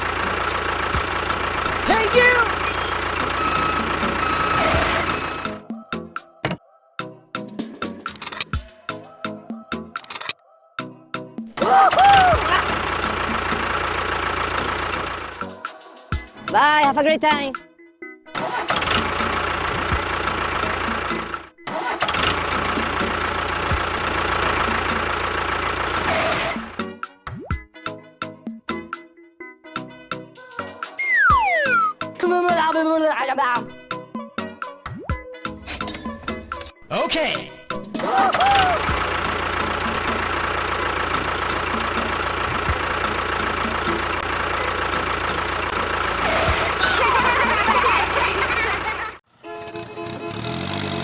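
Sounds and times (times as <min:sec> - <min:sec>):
engine running with low rumble: 0:00.0 - 0:06.2, 0:11.9 - 0:16.5, 0:18.4 - 0:26.9, 0:38.4 - 0:49.2.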